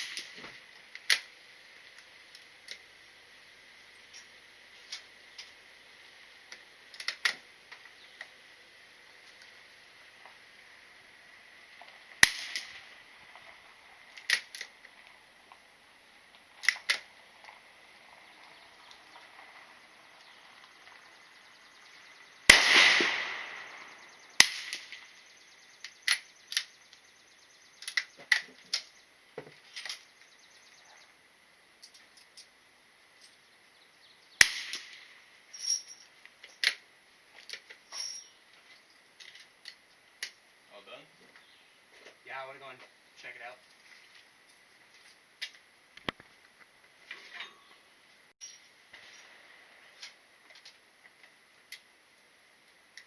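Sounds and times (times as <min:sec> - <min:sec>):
sharp cracks and clicks: 0:00.0 - 0:01.3, 0:06.5 - 0:08.3, 0:12.2 - 0:12.9, 0:14.1 - 0:15.6, 0:16.3 - 0:17.5, 0:22.5 - 0:25.2, 0:25.8 - 0:27.0, 0:27.8 - 0:28.9, 0:34.4 - 0:35.1
gunshots: 0:12.2 - 0:12.8, 0:22.5 - 0:25.0, 0:34.4 - 0:35.0.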